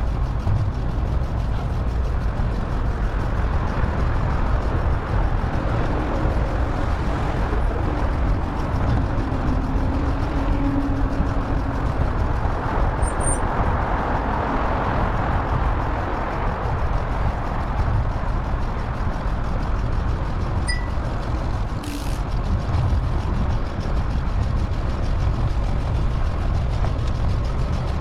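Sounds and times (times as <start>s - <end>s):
wind and road noise: 0.0s - 28.0s
passing vehicle engine hum: 2.9s - 17.4s.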